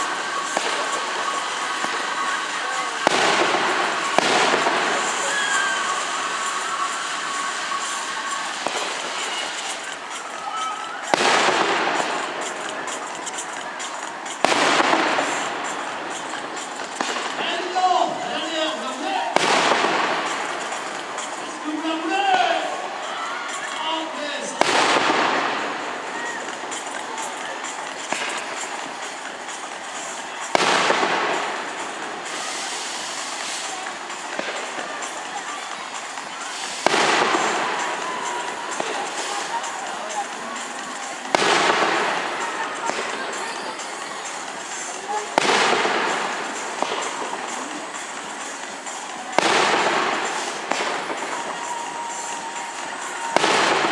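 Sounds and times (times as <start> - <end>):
fireworks crackling: 0.0 - 53.9
loud firework bang: 2.7 - 6.6, 8.5 - 13.4, 19.4 - 22.7.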